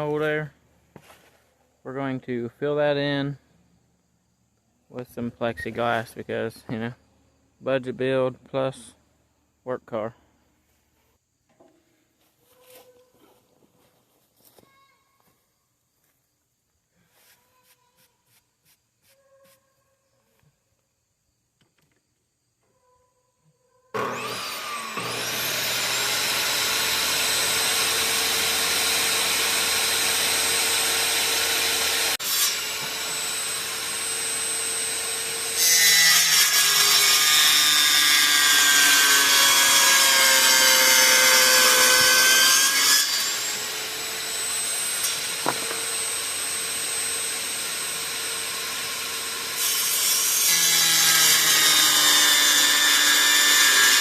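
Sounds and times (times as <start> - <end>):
power tool cutting plexiglass: 24.0 - 54.0.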